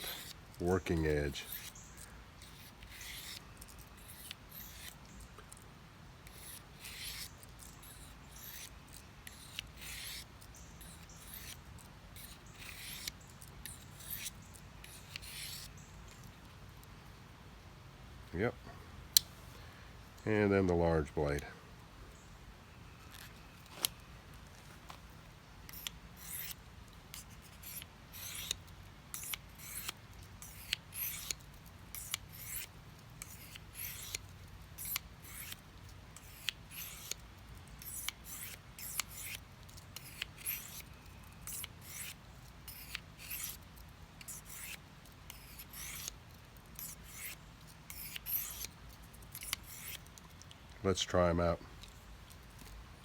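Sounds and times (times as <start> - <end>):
knife scraping on sharpening stone: 2.4 - 3.4, 6.3 - 10.2, 10.8 - 11.6, 12.2 - 15.7, 25.7 - 26.5, 34.8 - 35.6, 37.8 - 39.4, 40.0 - 40.8, 41.4 - 42.1, 42.7 - 43.6, 44.3 - 46.1, 46.8 - 48.7, 49.4 - 50.0.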